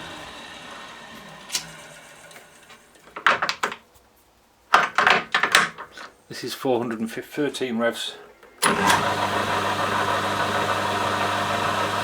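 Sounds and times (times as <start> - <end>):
metal lathe running down: 0.0 - 2.8, 8.6 - 12.0
clicks and knocks: 3.0 - 3.9, 4.7 - 6.1.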